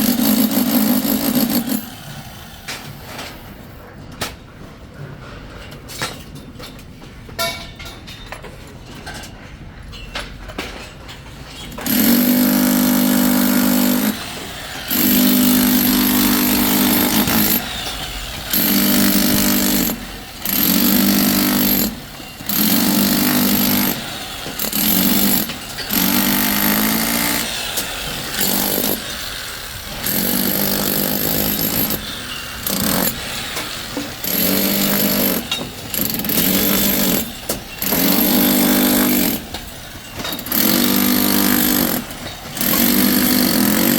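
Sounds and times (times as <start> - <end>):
power tool buzzing in bursts: 14.9 - 29.1.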